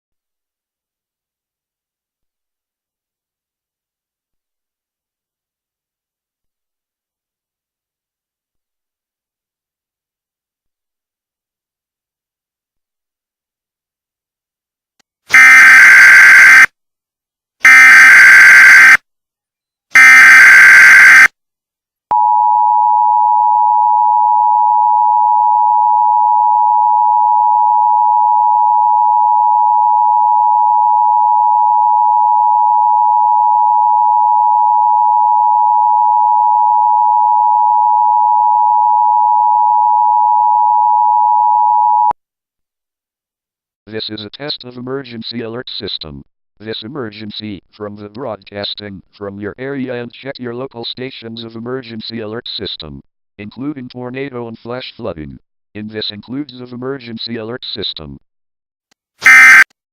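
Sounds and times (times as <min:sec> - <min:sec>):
digital data tone bursts: 0:20.0 - 0:21.3, 0:59.2 - 0:59.7
two-tone attention signal: 0:59.2 - 0:59.7.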